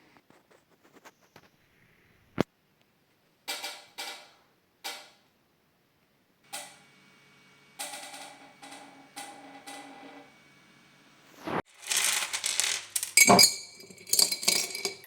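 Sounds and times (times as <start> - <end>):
metal parts scraping and clattering: 11.7 - 15.0.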